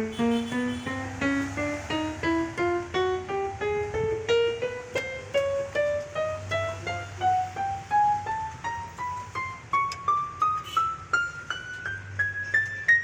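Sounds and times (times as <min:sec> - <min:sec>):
keyboard notes rising run: 0:00.9 - 0:10.3.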